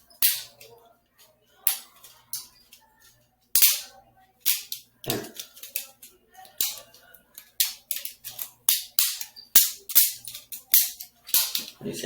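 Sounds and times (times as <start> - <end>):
butterfly knife clacking: 0.1 - 0.7, 3.6 - 11.8.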